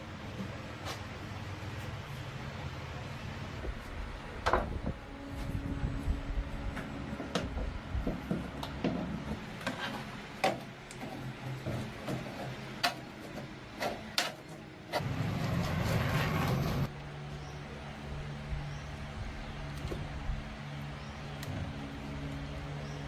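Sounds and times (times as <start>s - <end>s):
steady low hum: 0.0s - 23.0s
rough loud noise: 14.9s - 17.0s.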